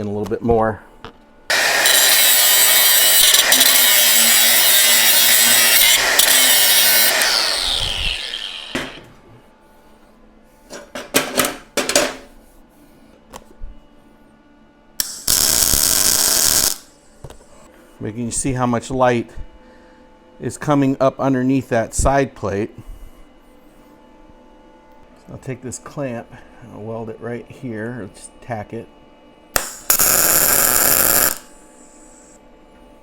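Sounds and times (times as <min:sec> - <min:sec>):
power grinder cutting steel: 0:01.5 - 0:09.1, 0:29.6 - 0:31.5.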